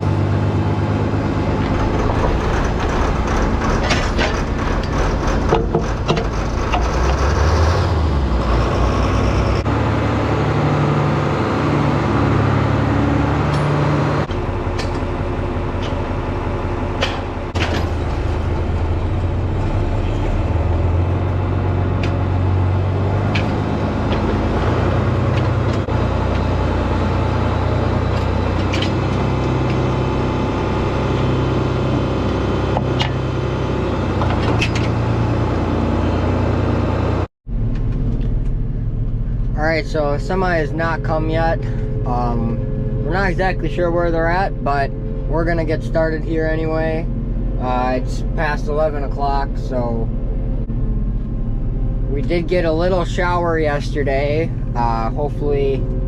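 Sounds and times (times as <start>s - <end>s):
tractor diesel engine running: 0.0s - 56.0s
sharp knocks: 1.8s - 7.2s.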